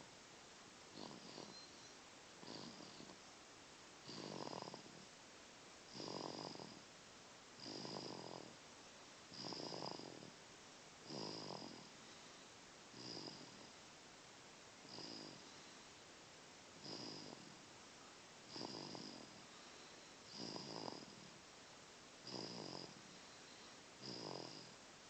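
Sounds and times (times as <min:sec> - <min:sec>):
whistling snores: 0:00.9 - 0:03.2, 0:04.1 - 0:04.9, 0:06.0 - 0:06.8, 0:07.6 - 0:08.5, 0:09.4 - 0:10.3, 0:11.1 - 0:13.7, 0:14.9 - 0:15.8, 0:16.8 - 0:17.5, 0:18.5 - 0:21.2, 0:22.2 - 0:24.7.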